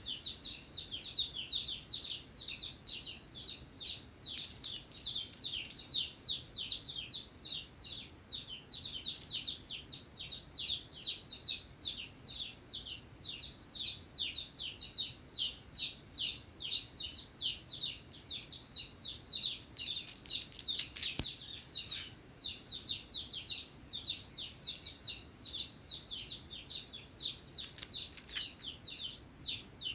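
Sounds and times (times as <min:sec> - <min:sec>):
bird chirping fast: 0:00.0 - 0:09.6, 0:16.2 - 0:29.9.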